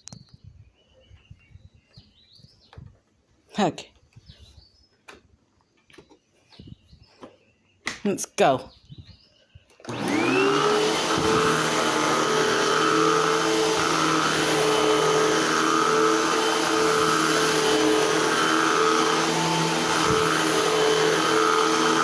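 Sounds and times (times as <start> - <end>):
vacuum cleaner motor whining: 9.8 - 22.0.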